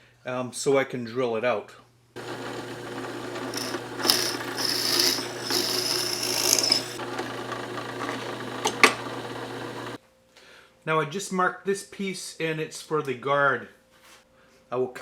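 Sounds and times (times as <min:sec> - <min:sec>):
drill bit grinding into plywood: 0:02.2 - 0:09.9
electric drill motor hum: 0:02.2 - 0:10.0.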